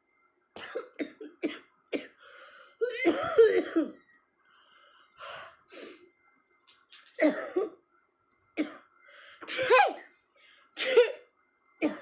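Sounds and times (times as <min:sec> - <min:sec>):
breathing: 0:02.2 - 0:02.8, 0:04.4 - 0:06.1, 0:09.0 - 0:09.4, 0:10.3 - 0:10.8
woman coughing: 0:02.8 - 0:04.0, 0:09.4 - 0:10.0.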